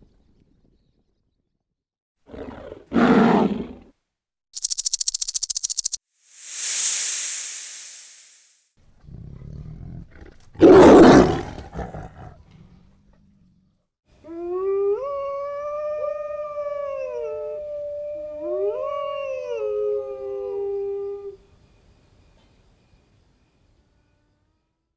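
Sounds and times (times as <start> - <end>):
hissing burst: 4.6 - 8.6
long wavering howl: 14.3 - 21.4.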